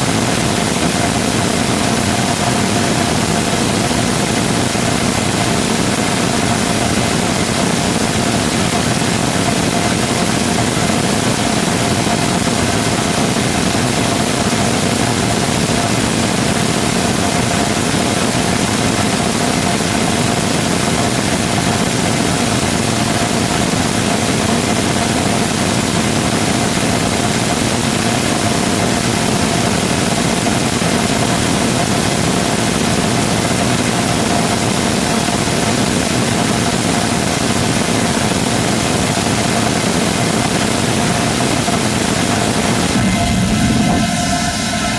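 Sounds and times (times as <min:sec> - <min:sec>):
rocket engine roaring: 0:40.2 - 0:44.9.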